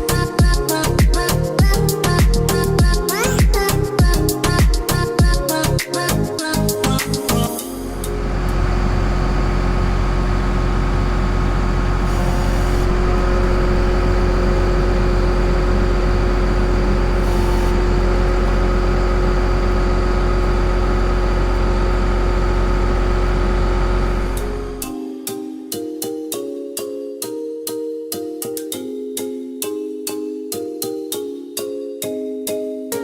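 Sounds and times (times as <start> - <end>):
tractor engine running: 6.7 - 24.9.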